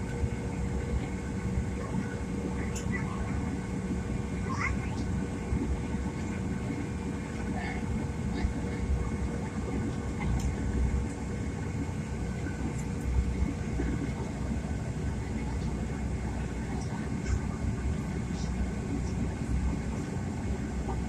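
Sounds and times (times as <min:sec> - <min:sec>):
airliner cabin rumble: 0:00.0 - 0:21.0.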